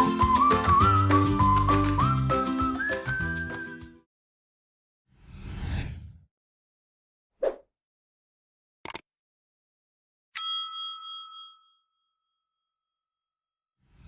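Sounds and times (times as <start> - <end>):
bright bell-like ding: 10.4 - 11.8.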